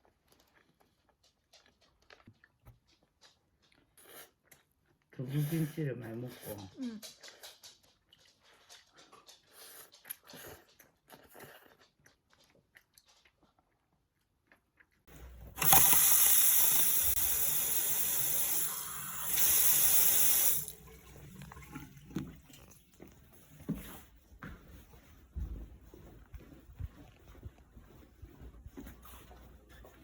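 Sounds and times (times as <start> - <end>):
tap water running into sink: 15.5 - 22.9.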